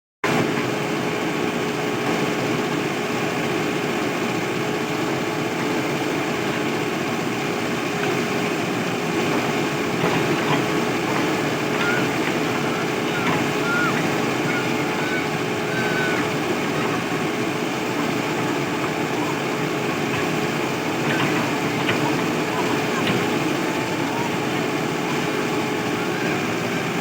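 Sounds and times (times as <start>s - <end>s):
diesel engine running: 0.3s - 27.0s.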